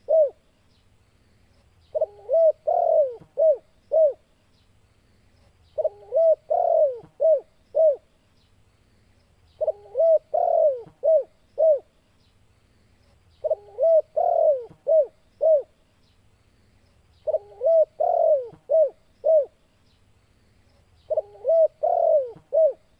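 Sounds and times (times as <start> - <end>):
dove cooing: 0.0 - 0.4, 1.9 - 4.3, 5.8 - 8.1, 9.6 - 11.9, 13.4 - 15.8, 17.2 - 19.6, 21.1 - 22.9.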